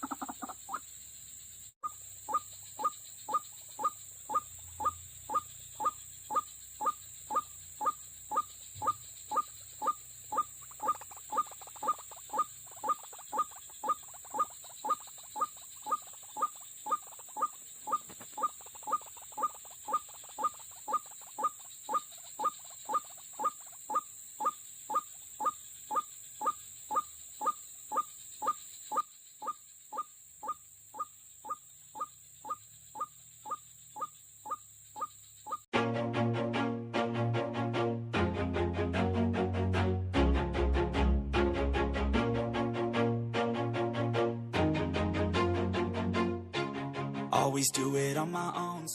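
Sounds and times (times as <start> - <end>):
bird croaking calls: 0.0 - 1.0, 1.8 - 35.7.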